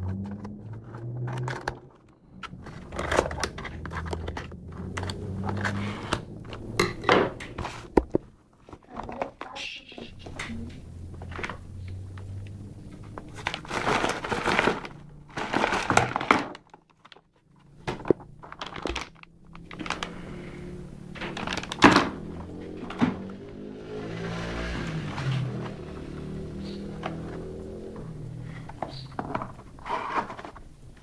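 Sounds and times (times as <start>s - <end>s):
thunks and knocks of handled parts: 0.0s - 9.5s, 12.9s - 20.1s, 21.1s - 23.6s
plastic crinkling: 11.3s - 22.7s.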